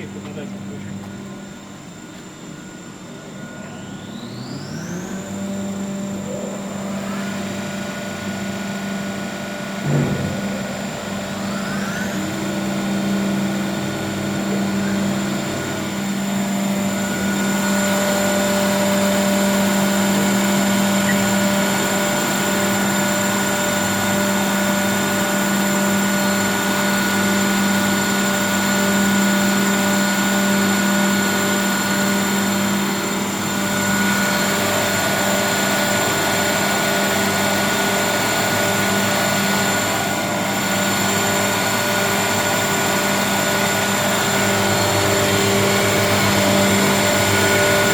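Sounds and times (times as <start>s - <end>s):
spindle motors whining: 0.0s - 47.9s
steady machine hum: 0.0s - 47.9s
machine knock: 9.8s - 10.8s.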